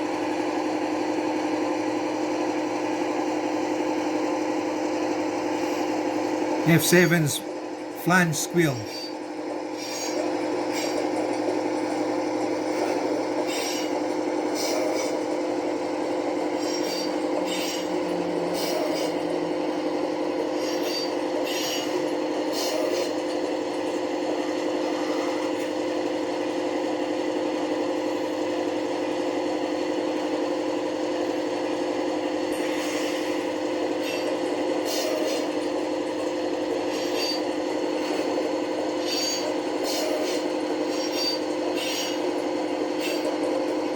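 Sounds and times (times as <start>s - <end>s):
diesel engine sound from small speaker: 14.4s - 23.1s.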